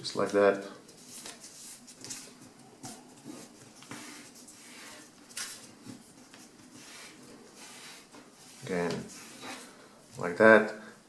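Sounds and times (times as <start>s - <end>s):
paper rustling and crinkling: 0.9s - 4.4s.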